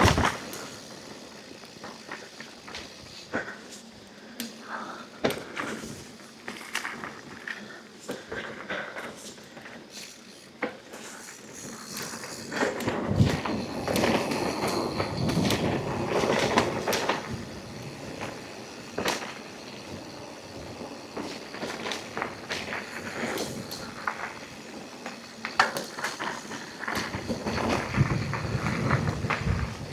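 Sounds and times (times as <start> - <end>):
tyres rolling over dirt: 0.0 - 4.0, 11.0 - 29.9
bike rattling and clicking: 0.0 - 29.9.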